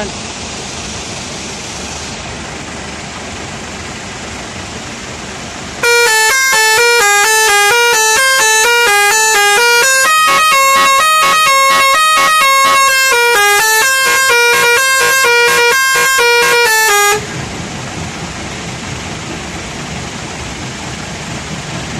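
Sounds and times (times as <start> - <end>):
vehicle noise: 0.0 - 21.9
musical horn playing a tune: 5.8 - 17.3.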